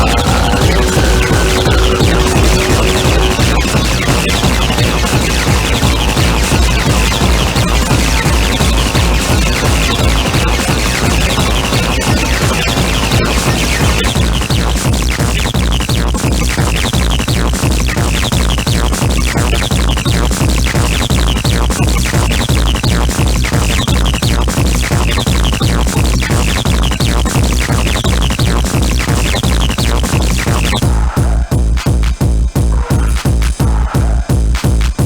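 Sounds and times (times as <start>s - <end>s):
techno music: 0.0s - 35.0s.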